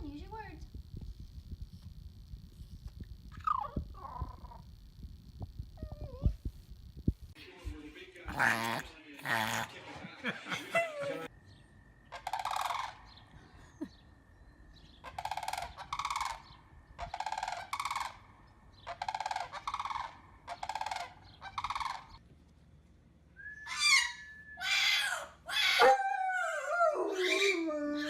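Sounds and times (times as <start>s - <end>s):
dog howling: 23.7s - 28.0s.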